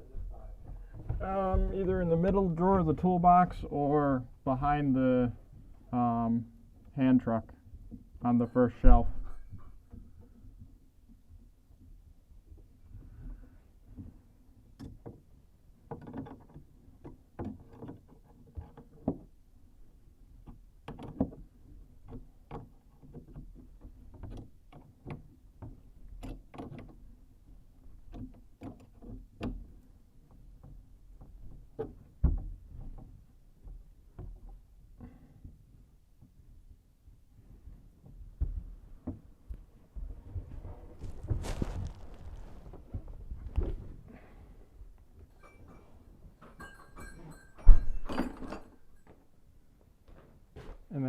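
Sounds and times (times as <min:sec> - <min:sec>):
tools and parts clicking and knocking: 0:14.8 - 0:19.4, 0:45.2 - 0:49.3.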